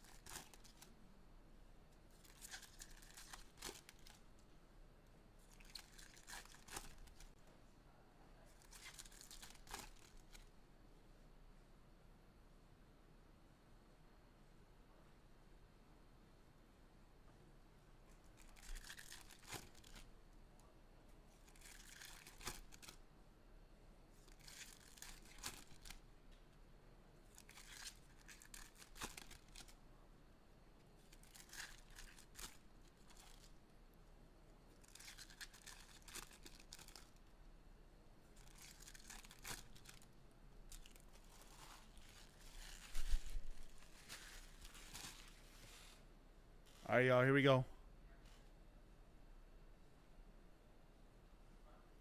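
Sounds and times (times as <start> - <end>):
foil packs ripping and crinkling: 0.0 - 0.9, 2.3 - 4.2, 5.5 - 7.3, 18.4 - 20.0, 21.6 - 23.0, 24.3 - 26.0, 27.3 - 29.7, 31.1 - 33.5, 34.8 - 37.2, 38.4 - 40.1, 40.7 - 45.7.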